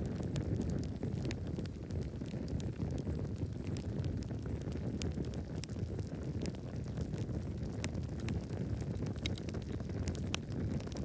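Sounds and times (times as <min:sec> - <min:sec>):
low noise of flames: 0:00.0 - 0:11.0
wood crackling and popping: 0:00.0 - 0:11.0.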